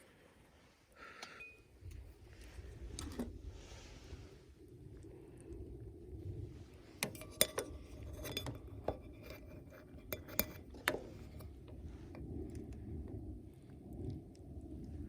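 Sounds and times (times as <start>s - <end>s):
low background rumble: 0.0s - 15.0s
utensils clinking on tableware: 7.0s - 11.4s.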